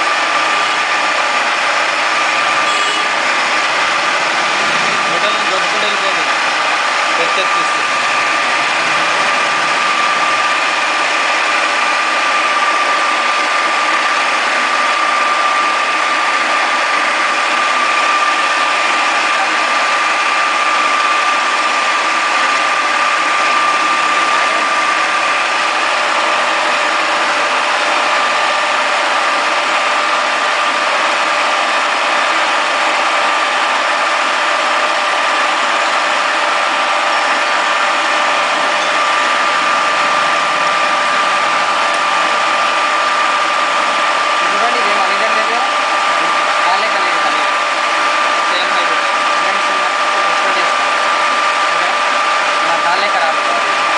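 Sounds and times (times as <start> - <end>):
milling machine running: 0.0 - 53.9
steady high whine: 0.0 - 53.9.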